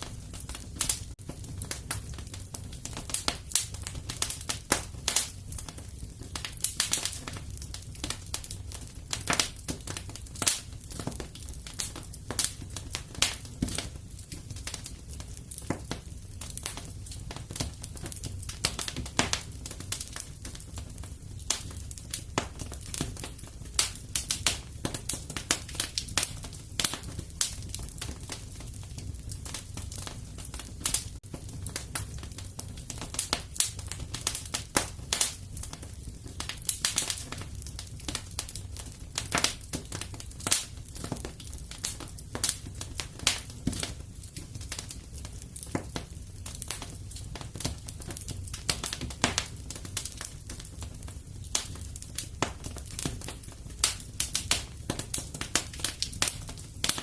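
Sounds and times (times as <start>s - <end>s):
fire crackling and popping: 0.0s - 57.0s
low fire rumble: 0.0s - 57.0s.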